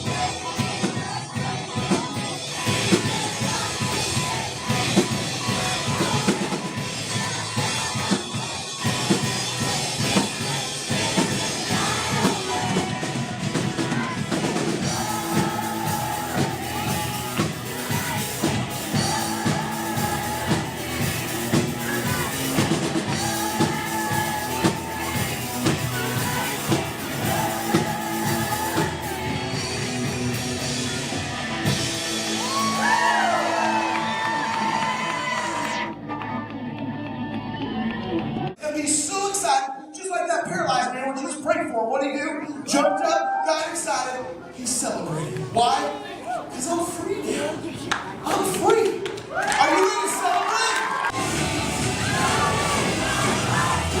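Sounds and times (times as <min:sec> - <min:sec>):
person singing: 0:00.0 - 0:30.0
drum kit: 0:00.0 - 0:35.8, 0:51.1 - 0:54.0
upbeat rock song: 0:00.0 - 0:35.8, 0:51.0 - 0:54.0.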